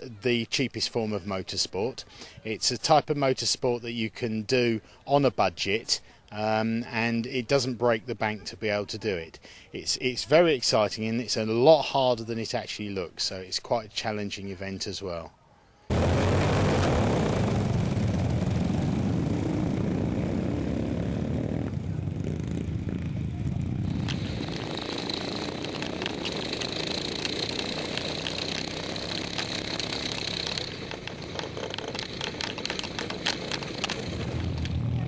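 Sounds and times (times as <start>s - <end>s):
high whine: 15.9s - 35.0s
lawn mower engines drone: 16.0s - 35.0s.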